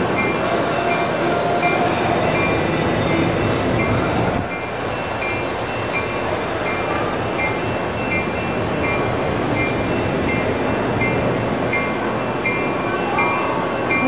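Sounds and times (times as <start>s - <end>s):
railroad crossing bell ringing: 0.0s - 14.0s.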